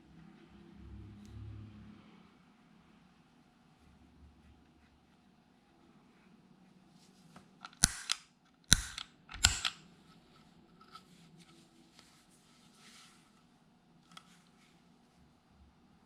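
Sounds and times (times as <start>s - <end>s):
faint rustling: 10.0s - 13.6s.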